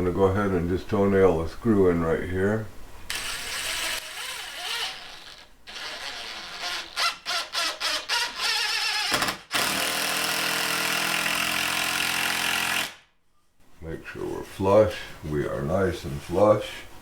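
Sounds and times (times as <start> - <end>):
power drill driving a screw: 3.1 - 13.0.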